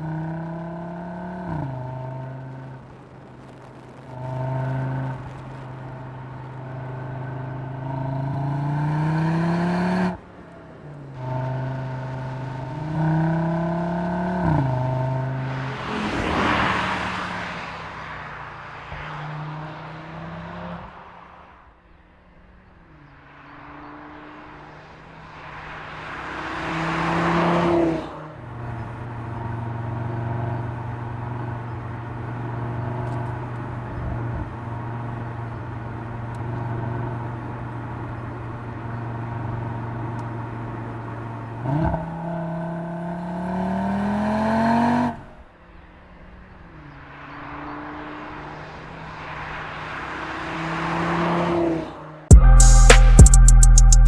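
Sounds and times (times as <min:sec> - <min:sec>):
car engine driving: 0:00.0 - 0:54.0.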